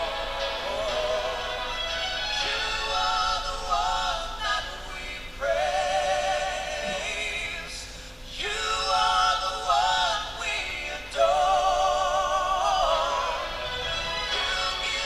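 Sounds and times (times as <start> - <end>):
musical accompaniment: 0.0 - 4.8, 10.8 - 15.0.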